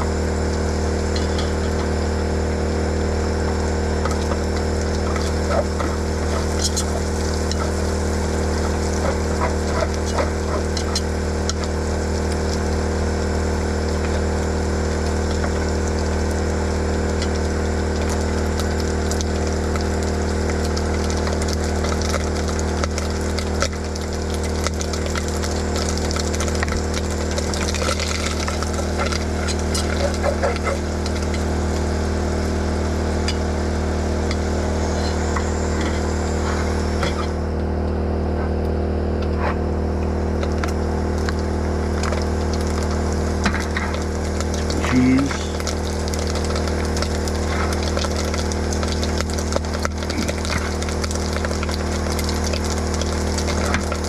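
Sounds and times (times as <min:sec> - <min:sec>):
generator engine hum: 0:00.0 - 0:54.0
food sizzling in a pan: 0:41.5 - 0:54.0.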